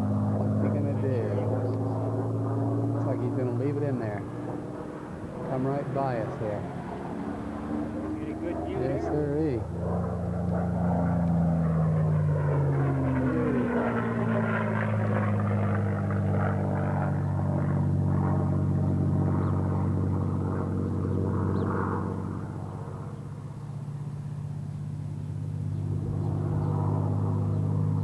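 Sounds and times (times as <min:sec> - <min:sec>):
propeller plane passing: 0:00.0 - 0:28.0.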